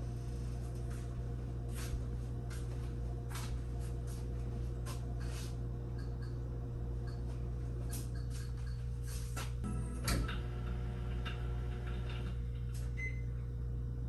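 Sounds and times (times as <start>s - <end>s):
low hum: 9.6s - 14.0s.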